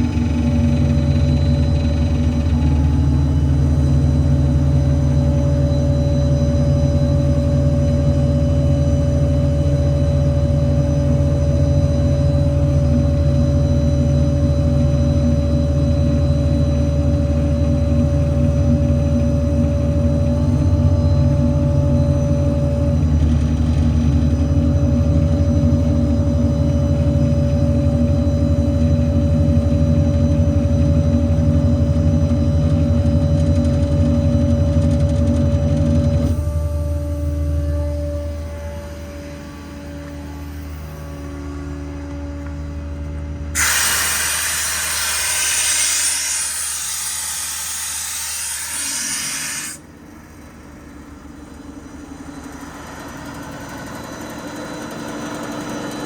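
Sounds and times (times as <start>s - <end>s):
diesel engine humming: 0.0s - 14.9s, 17.1s - 46.9s
hydraulic whine: 0.0s - 56.0s.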